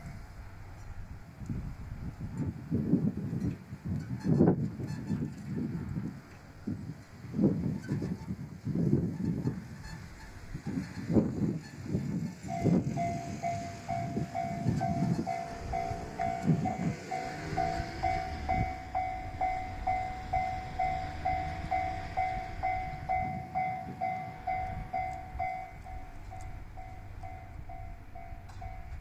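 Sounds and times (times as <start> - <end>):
train rumbling and clattering: 0.0 - 29.0
level-crossing warning bell: 9.8 - 29.0.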